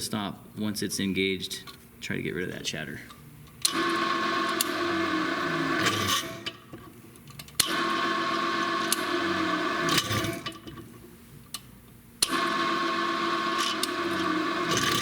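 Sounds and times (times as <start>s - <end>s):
drill press running: 3.6s - 6.8s, 7.5s - 10.8s, 12.2s - 15.0s.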